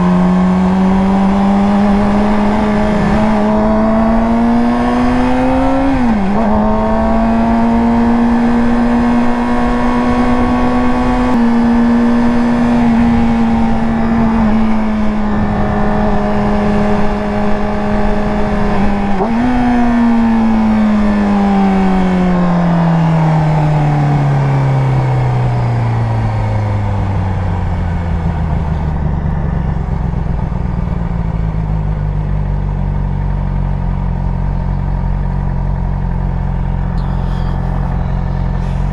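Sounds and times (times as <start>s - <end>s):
motorcycle engine under way: 0.0s - 38.9s
gear change: 34.1s - 38.9s.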